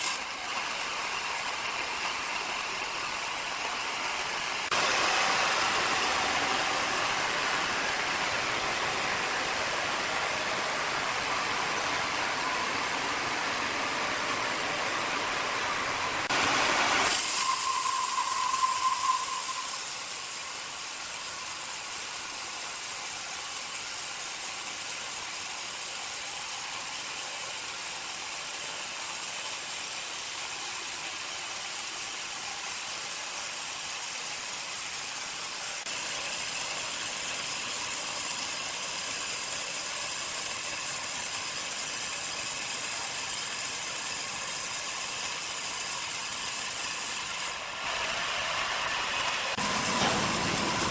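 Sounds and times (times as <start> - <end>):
sawmill machinery running: 0.0 - 50.9
high whine: 4.8 - 20.4.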